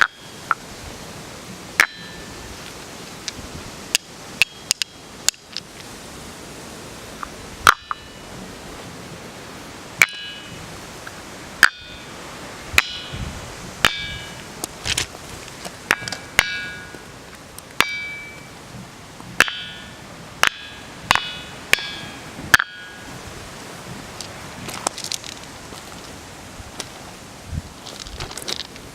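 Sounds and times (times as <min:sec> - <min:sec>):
stone striking boulder with ring: 0:00.0 - 0:00.6, 0:01.8 - 0:02.4, 0:04.0 - 0:05.5, 0:07.6 - 0:08.2, 0:10.0 - 0:10.7, 0:11.6 - 0:12.1, 0:12.7 - 0:14.4, 0:15.9 - 0:17.0, 0:17.8 - 0:18.5, 0:19.4 - 0:23.2.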